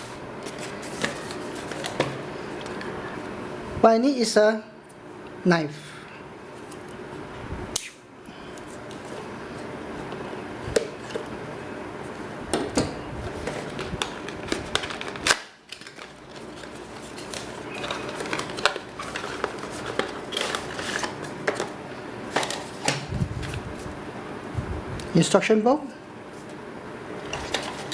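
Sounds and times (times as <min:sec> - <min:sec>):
cardboard and plastic rustling: 0:00.4 - 0:02.8, 0:13.2 - 0:24.0, 0:27.2 - 0:27.9.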